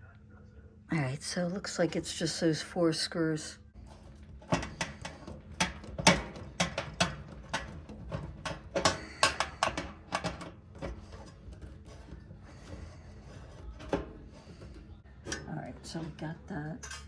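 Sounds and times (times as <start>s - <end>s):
sheet-metal parts knocking: 3.8s - 16.2s.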